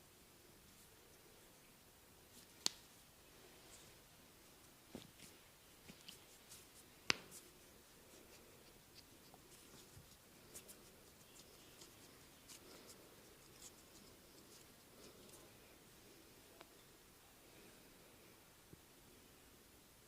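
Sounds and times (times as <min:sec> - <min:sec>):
hand rubbing on skin: 0:04.9 - 0:15.5.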